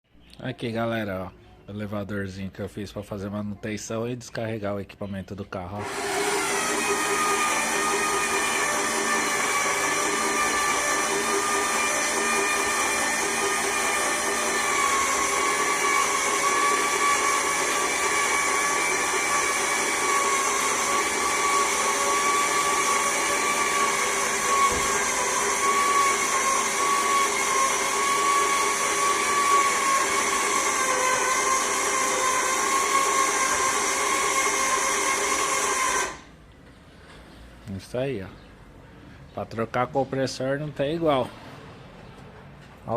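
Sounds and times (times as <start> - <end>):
electric motor whining: 5.8 - 36.3.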